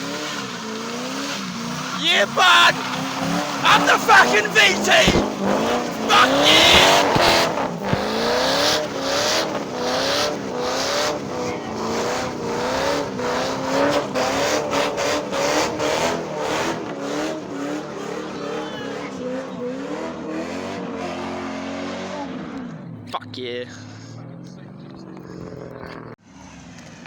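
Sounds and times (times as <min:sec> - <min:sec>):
car engine revving: 0:00.0 - 0:26.8
tyres squealing: 0:01.7 - 0:08.3.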